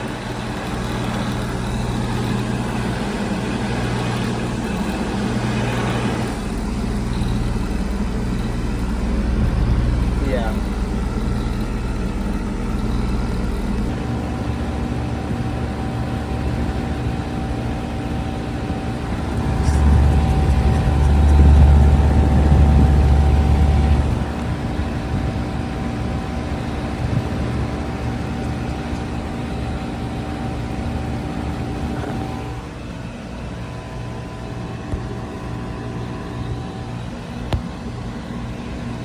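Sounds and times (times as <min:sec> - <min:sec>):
held tones: 0:00.0 - 0:16.8
heat pump humming: 0:00.0 - 0:39.0
low rumble: 0:01.3 - 0:27.8.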